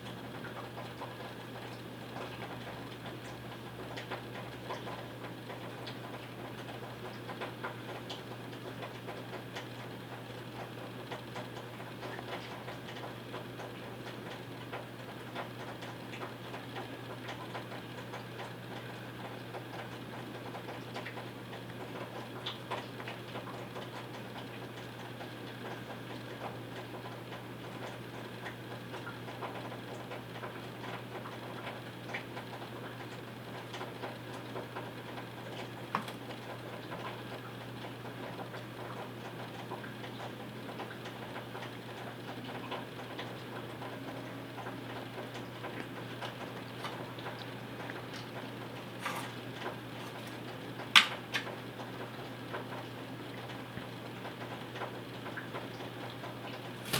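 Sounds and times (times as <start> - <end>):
small clicks and taps: 35.9 - 36.4, 50.0 - 51.5.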